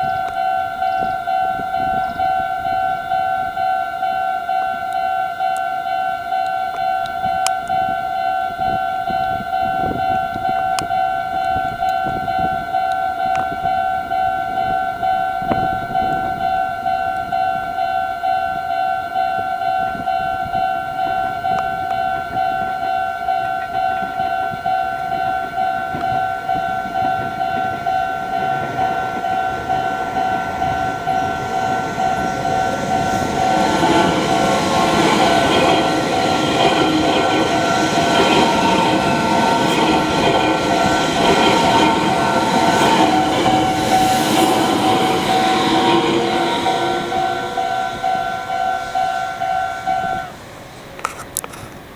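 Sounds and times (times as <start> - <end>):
level crossing warning bell ringing: 0.0 - 50.7
train running noise: 0.0 - 51.9.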